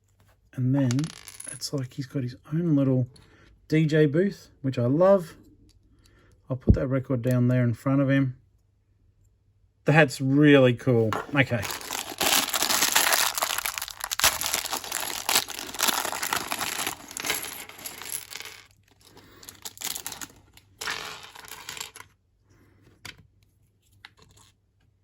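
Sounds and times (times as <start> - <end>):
packaging crinkling and tearing: 11.3 - 20.5.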